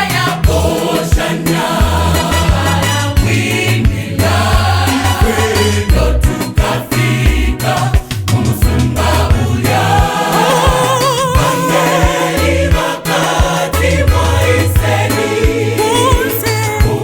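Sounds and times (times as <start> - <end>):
choir singing gospel music: 0.0 - 17.0
regular beat: 0.0 - 17.0
steady bass line: 0.0 - 17.0.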